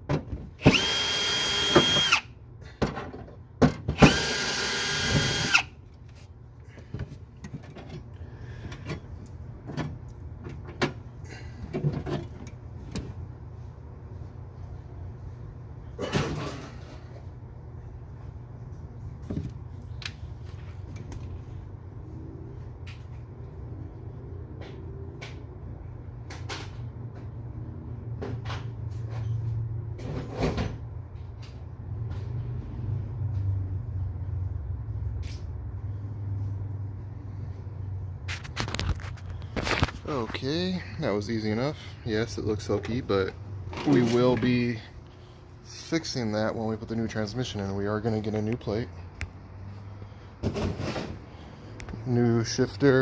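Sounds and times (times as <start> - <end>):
tool and trim parts clicking: 0.6 - 2.3, 4.0 - 5.7.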